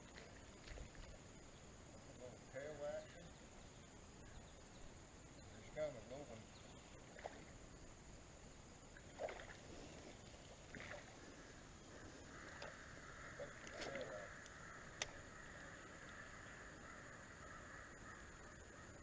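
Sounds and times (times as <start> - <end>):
soft water sloshes: 0.0 - 1.7, 6.5 - 8.1, 8.8 - 14.4
faint creek ambience: 0.0 - 19.0.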